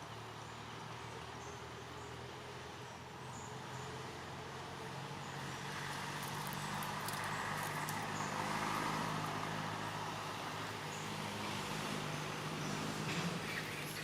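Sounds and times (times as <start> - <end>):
road noise: 0.0 - 14.0
vehicle engine passing: 4.0 - 14.0.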